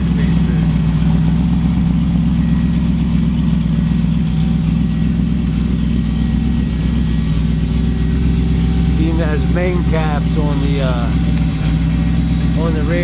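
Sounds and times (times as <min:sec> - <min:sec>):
truck engine idling: 0:00.0 - 0:13.0.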